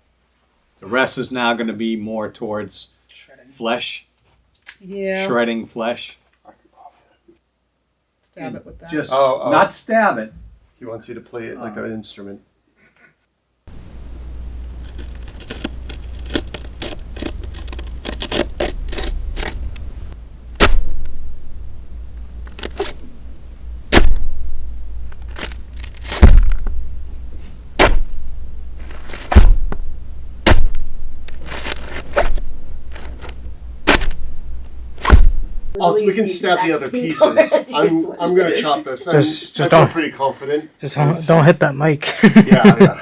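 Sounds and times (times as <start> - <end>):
low steady hum: 13.7 - 36.0
wet crackling and tearing: 14.2 - 19.9, 22.4 - 23.0, 23.9 - 24.4, 25.0 - 26.8, 27.8 - 28.2, 28.8 - 35.5
tool stabbing raw vegetables: 14.7 - 19.8, 20.6 - 21.2, 22.4 - 23.0, 23.9 - 26.8, 27.8 - 28.2, 28.8 - 35.8.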